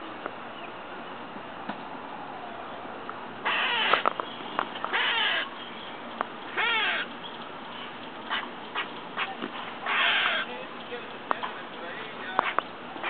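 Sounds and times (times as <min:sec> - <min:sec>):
squirrel raspy calls: 0:03.4 - 0:13.0.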